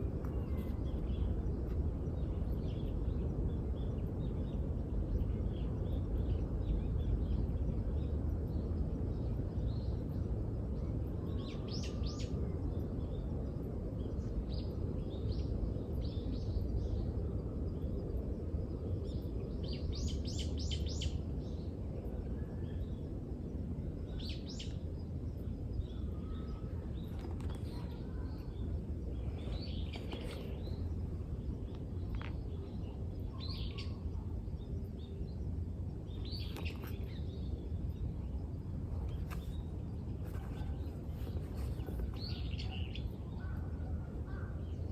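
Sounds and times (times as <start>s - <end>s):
low outdoor rumble: 0.0s - 44.9s
birds chirping: 24.0s - 43.6s.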